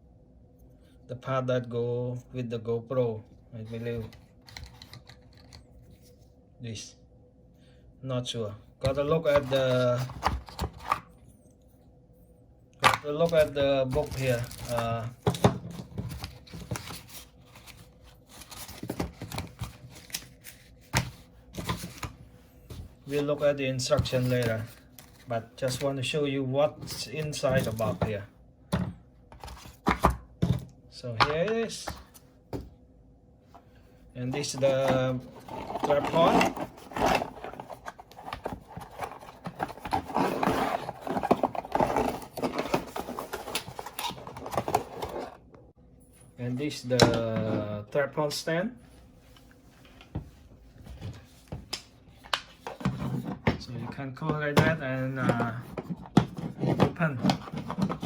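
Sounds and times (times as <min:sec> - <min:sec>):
booklet paper rustling: 0:13.2 - 0:15.1
tripod and packaging handled: 0:13.3 - 0:15.0.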